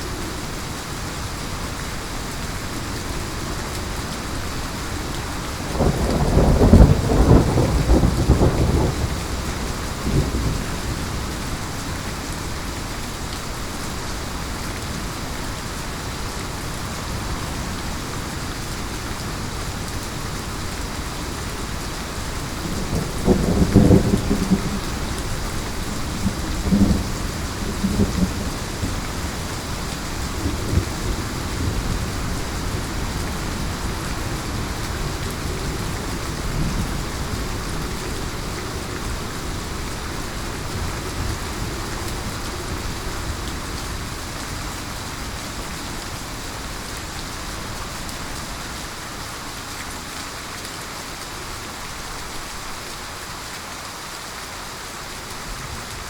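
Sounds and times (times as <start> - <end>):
heavy rain pouring: 0.0 - 56.0
rolling thunder: 5.7 - 11.0, 22.6 - 33.9.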